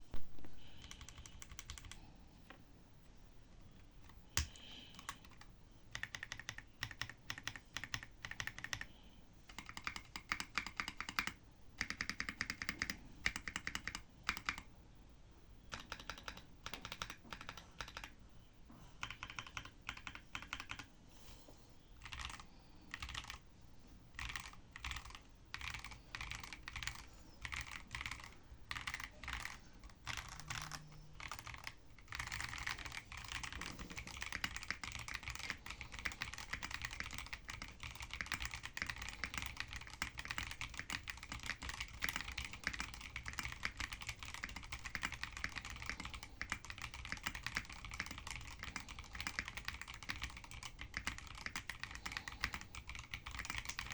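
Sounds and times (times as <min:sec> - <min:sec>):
mechanical keyboard typing: 0:00.8 - 0:02.0, 0:04.0 - 0:08.9, 0:09.5 - 0:14.7, 0:15.7 - 0:18.2, 0:19.0 - 0:20.9, 0:22.0 - 0:23.4, 0:24.2 - 0:53.9.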